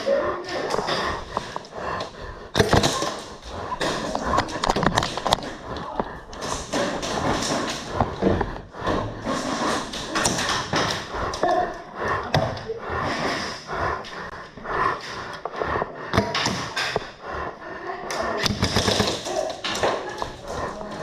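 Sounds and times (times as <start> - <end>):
sharp knocks and taps: 18.1 - 21.0.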